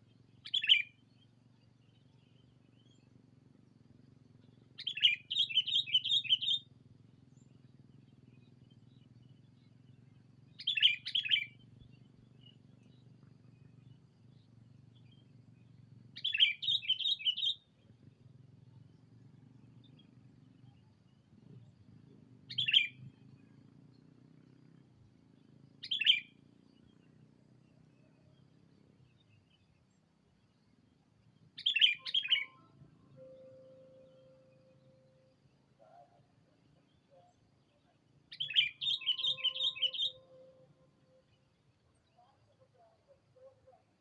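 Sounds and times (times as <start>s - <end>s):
bulbul chirpy calls: 0.4s - 1.0s, 4.4s - 6.7s, 9.3s - 29.6s, 31.4s - 44.0s.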